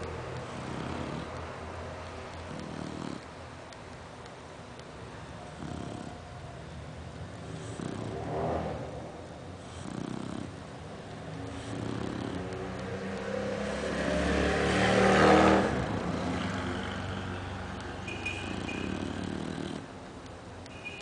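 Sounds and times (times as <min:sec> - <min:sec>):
dog snoring: 0:00.0 - 0:01.5, 0:02.3 - 0:03.3, 0:05.5 - 0:06.3, 0:07.4 - 0:08.9, 0:09.6 - 0:10.6, 0:11.4 - 0:19.9.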